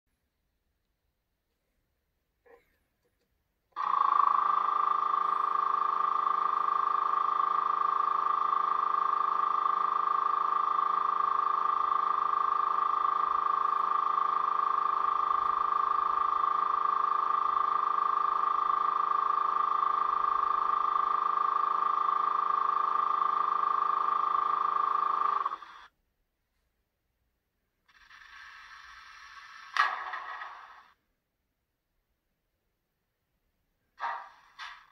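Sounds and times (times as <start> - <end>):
model locomotive hum from speaker: 3.8 - 25.9.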